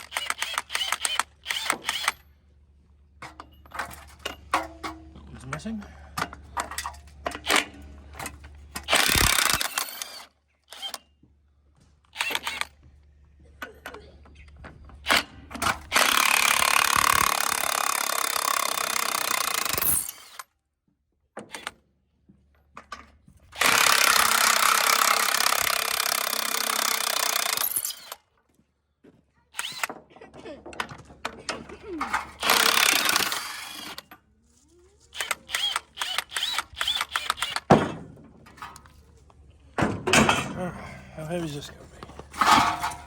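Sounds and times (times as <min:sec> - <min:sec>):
impact wrench running: 0:00.0 - 0:02.2, 0:08.8 - 0:11.0, 0:12.2 - 0:12.8, 0:15.7 - 0:20.4, 0:23.5 - 0:28.2, 0:32.3 - 0:34.1, 0:35.2 - 0:37.8.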